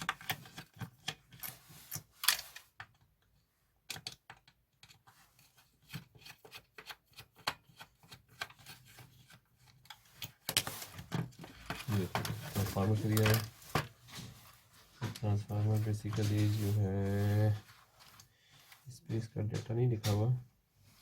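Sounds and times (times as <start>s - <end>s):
clicks and taps of parts: 0.0s - 5.1s.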